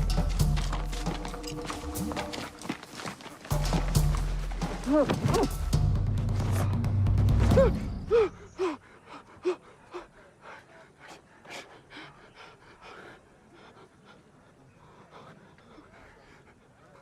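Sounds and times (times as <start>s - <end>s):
person gasping and panting: 7.5s - 12.3s.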